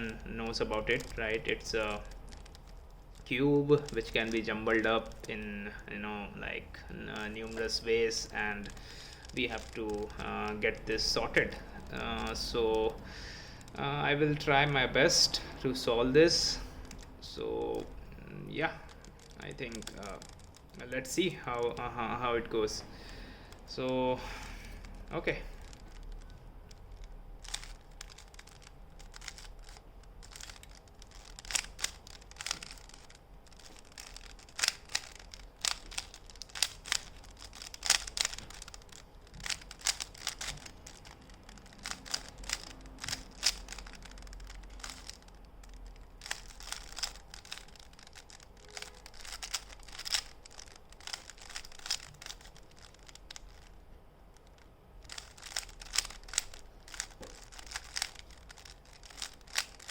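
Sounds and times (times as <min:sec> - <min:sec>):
puzzle cube layers clicking: 0:00.0 - 0:59.9.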